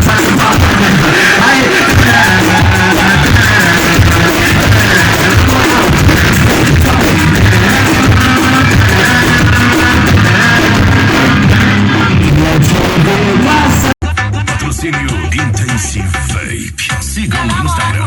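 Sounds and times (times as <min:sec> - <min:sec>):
loud music with heavy bass: 0:00.0 - 0:18.0.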